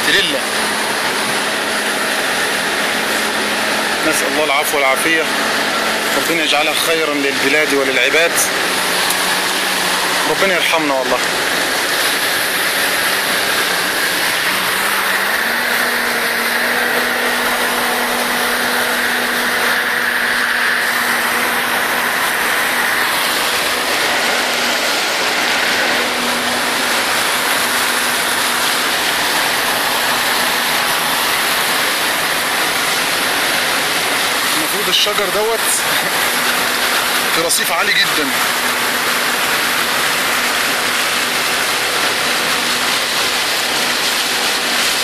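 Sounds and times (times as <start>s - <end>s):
low engine hum: 0.0s - 34.9s
water rushing and splashing: 0.0s - 45.0s.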